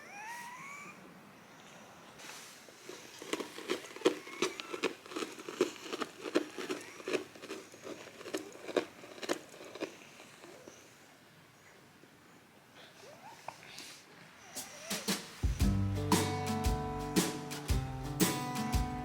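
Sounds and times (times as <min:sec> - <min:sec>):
cat chewing grass: 0:02.7 - 0:10.8.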